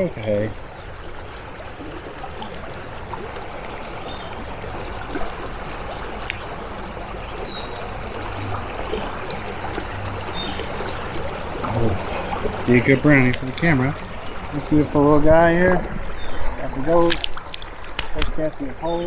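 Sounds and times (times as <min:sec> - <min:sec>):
stream water rushing: 0:00.0 - 0:19.0
faint clicks: 0:03.2 - 0:06.6, 0:07.3 - 0:11.8, 0:15.6 - 0:18.5.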